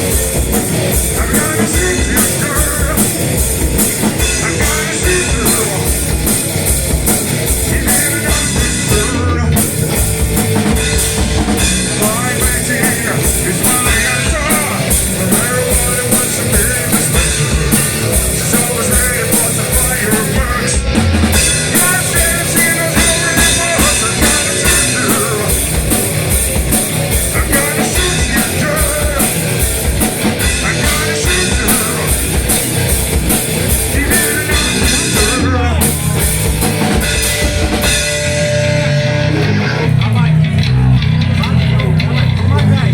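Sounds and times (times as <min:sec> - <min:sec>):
bass guitar: 0:00.0 - 0:42.9
drum kit: 0:00.0 - 0:42.9
electric guitar: 0:00.0 - 0:42.9
person singing: 0:01.0 - 0:06.2, 0:07.6 - 0:10.1, 0:11.6 - 0:25.8, 0:27.3 - 0:29.6, 0:30.3 - 0:32.5, 0:33.8 - 0:36.2.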